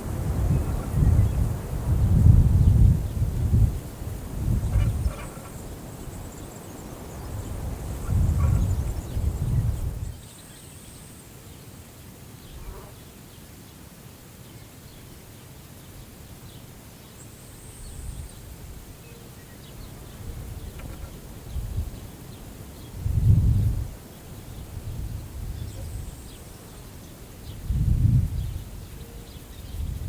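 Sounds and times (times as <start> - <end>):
wind buffeting microphone: 0.0 - 10.2, 19.8 - 22.2, 22.8 - 26.4, 27.4 - 30.0
steady wind hiss: 0.0 - 30.0.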